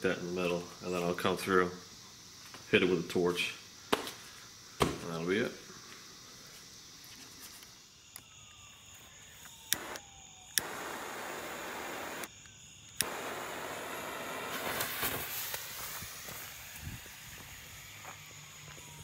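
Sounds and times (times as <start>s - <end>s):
torch igniter clicking: 9.6s - 16.4s
torch flame hissing: 9.6s - 19.0s
fuses crackling and sputtering: 9.7s - 12.3s, 12.9s - 18.3s.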